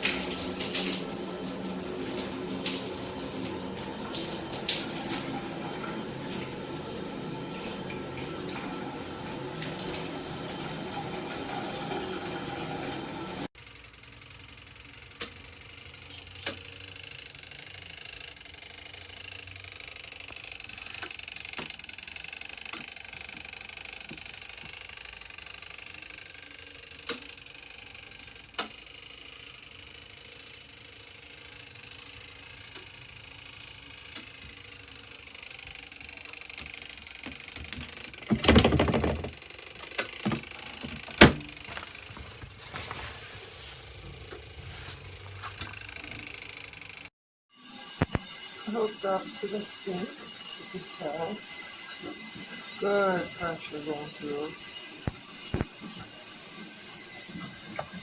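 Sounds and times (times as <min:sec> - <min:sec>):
water running from a faucet: 0:00.0 - 0:13.5, 0:47.5 - 0:58.0.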